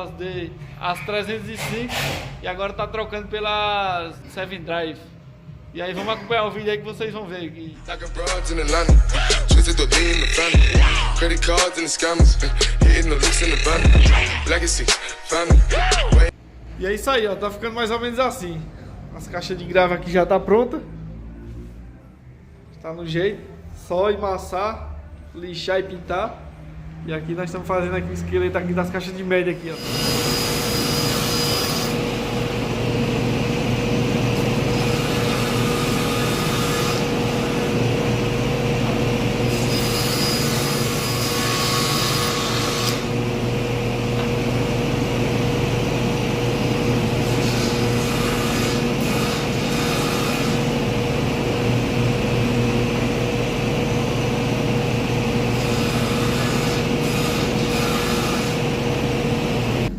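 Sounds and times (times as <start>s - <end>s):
power tool cutting wood: 29.7s - 59.9s.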